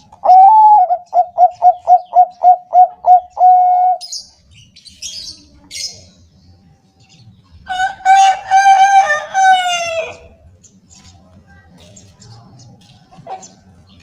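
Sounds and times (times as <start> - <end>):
dove cooing: 0.0 - 4.2.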